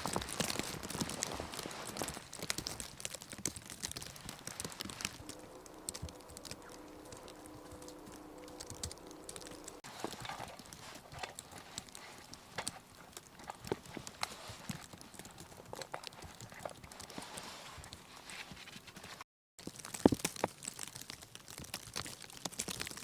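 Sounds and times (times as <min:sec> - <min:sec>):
rapid knocks and crunches: 0:00.0 - 0:19.0
faint steady hum: 0:05.2 - 0:14.6.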